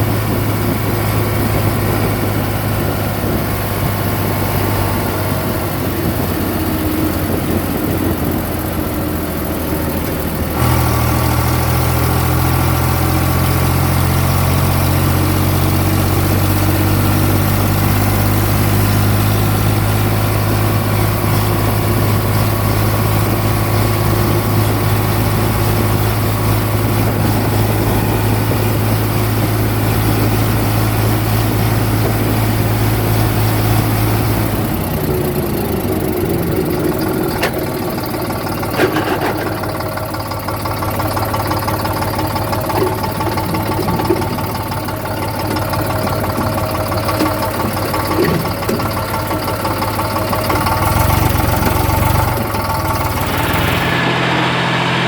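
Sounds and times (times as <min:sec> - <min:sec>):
tractor diesel engine running: 0:00.0 - 0:55.0.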